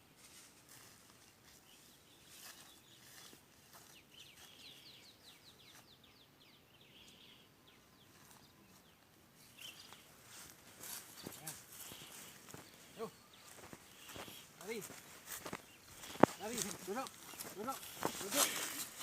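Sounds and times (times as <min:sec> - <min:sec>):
bird chirping: 0:01.2 - 0:19.0
soft rustles: 0:08.1 - 0:19.0.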